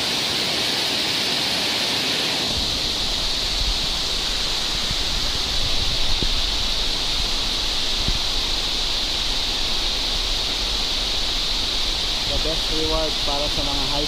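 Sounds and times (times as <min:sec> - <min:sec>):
waterfall roaring: 0:00.0 - 0:14.0
wind thumps on microphone: 0:02.5 - 0:13.0.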